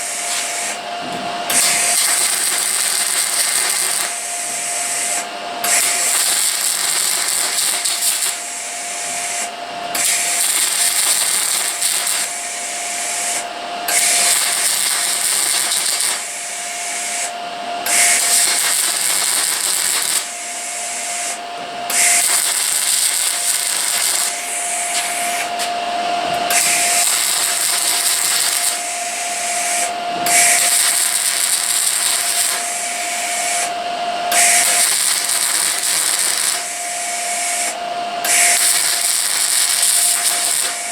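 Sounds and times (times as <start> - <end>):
power tool grinding metal: 0.0 - 40.9.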